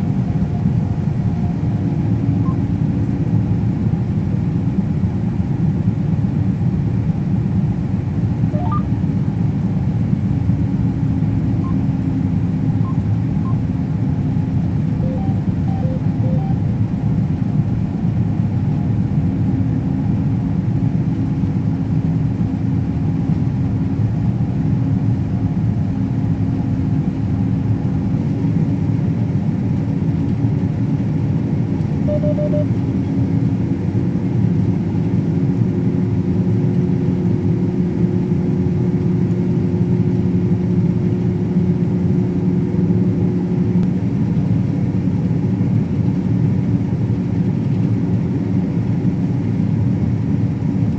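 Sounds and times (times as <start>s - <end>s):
diesel machinery engine drone: 0.0s - 5.7s, 7.2s - 50.9s
high beep: 8.6s - 9.0s, 15.0s - 16.6s, 32.1s - 32.7s
steady hum: 14.4s - 16.9s, 31.8s - 33.0s.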